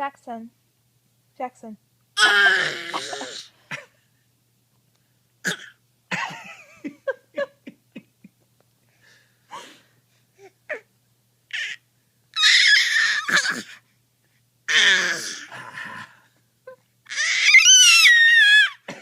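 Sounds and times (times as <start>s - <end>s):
person fake coughing: 2.7s - 3.9s, 5.5s - 6.5s.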